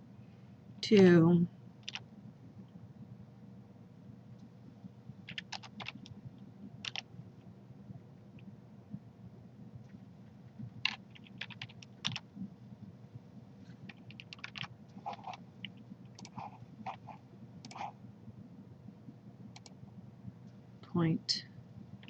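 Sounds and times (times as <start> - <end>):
low steady hum: 0.0 - 22.0
keyboard keystrokes: 1.8 - 2.0, 5.3 - 6.1, 6.8 - 7.0, 10.8 - 12.2, 13.9 - 17.0
mouse clicks: 13.9 - 17.0.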